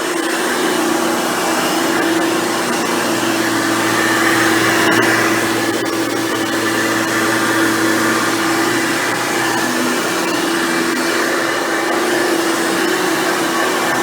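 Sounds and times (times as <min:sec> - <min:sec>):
upright vacuum cleaner running: 0:00.0 - 0:14.0.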